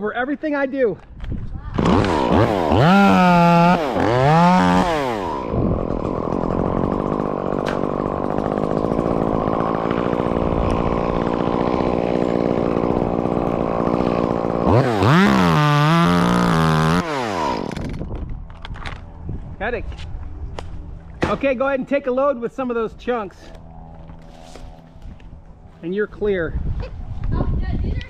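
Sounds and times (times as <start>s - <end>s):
chainsaw cutting wood: 1.8s - 19.0s.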